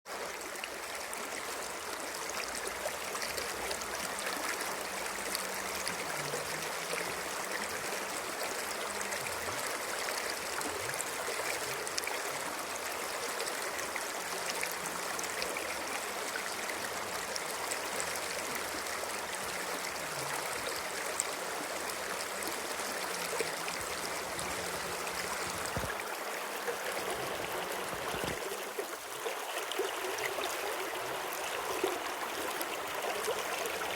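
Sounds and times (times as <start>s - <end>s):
stream of water running: 0.1s - 33.9s.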